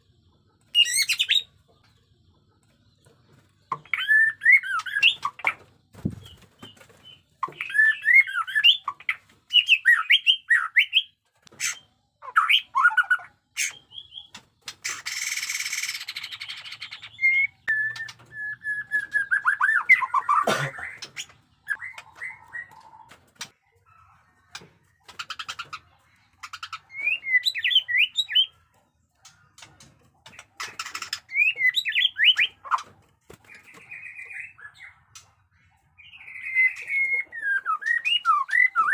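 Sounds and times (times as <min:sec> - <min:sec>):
bird singing gliding whistles: 0:15.3 - 0:20.2.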